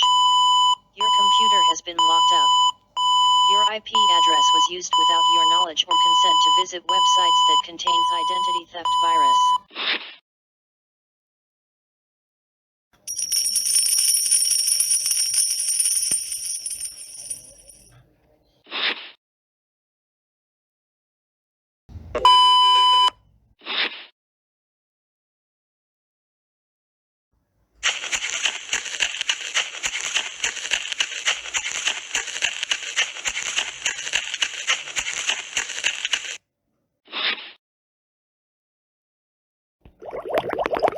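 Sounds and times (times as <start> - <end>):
small bells jingling: 13.1 - 17.9.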